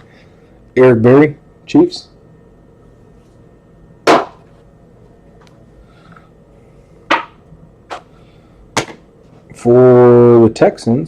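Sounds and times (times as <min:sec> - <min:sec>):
knocks on a tabletop: 0:07.1 - 0:07.4.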